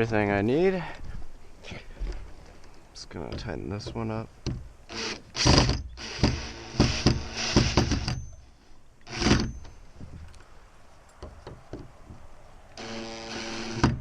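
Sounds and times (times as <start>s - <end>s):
drill driving screw into wood: 4.9s - 8.3s, 9.0s - 9.7s, 12.8s - 14.0s.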